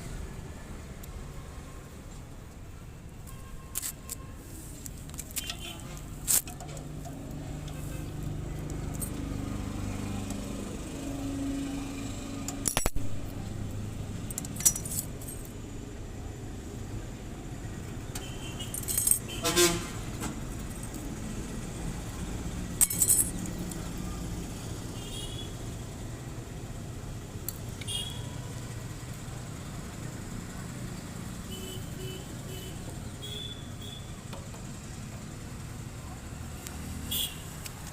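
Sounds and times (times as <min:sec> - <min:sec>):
metallic clacks and rattles: 0:05.0 - 0:07.8, 0:14.3 - 0:15.5, 0:22.8 - 0:23.6.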